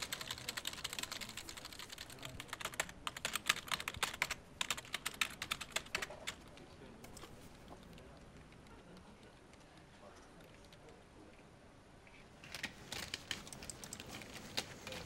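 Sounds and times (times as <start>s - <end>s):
typing on computer keyboard: 0.0s - 6.4s, 12.5s - 15.0s.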